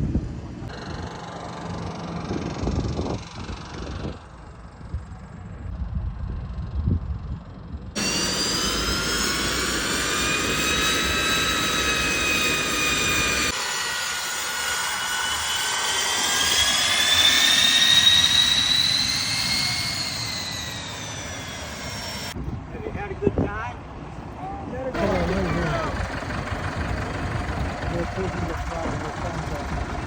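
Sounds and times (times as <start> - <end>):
jet engines roaring: 0.0 - 5.7, 7.6 - 23.2, 23.8 - 30.0
low wind rumble: 0.0 - 13.6, 15.1 - 30.0.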